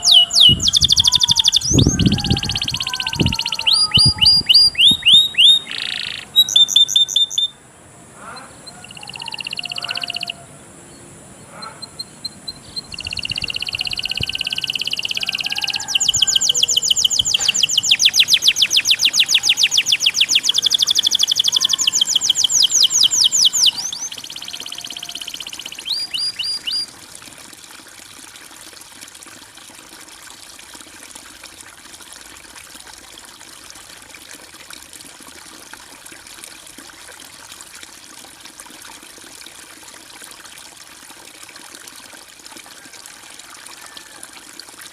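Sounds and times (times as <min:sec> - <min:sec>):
songbird trilling: 0:00.0 - 0:07.6, 0:08.2 - 0:10.4, 0:11.4 - 0:26.9
trickle of flowing water: 0:00.0 - 0:07.6, 0:08.3 - 0:44.9.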